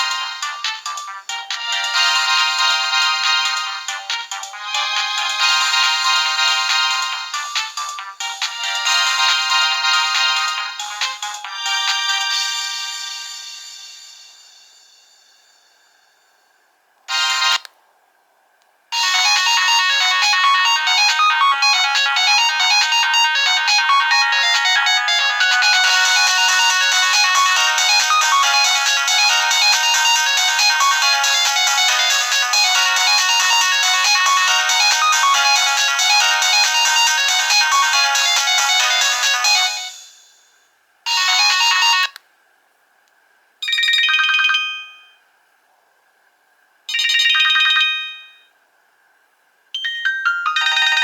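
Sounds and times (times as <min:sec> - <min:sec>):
polyphonic phone ringtone: 0:00.0 - 0:14.0, 0:18.9 - 0:40.4, 0:41.1 - 0:42.1, 0:43.6 - 0:45.2, 0:46.9 - 0:48.5, 0:49.8 - 0:51.0.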